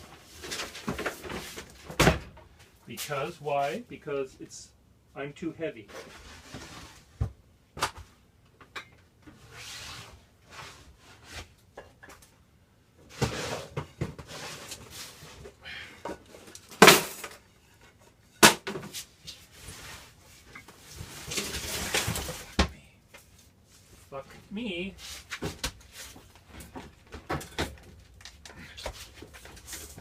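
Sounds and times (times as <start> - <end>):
shuffling and scraping: 18.8 - 27.2, 27.8 - 30.0.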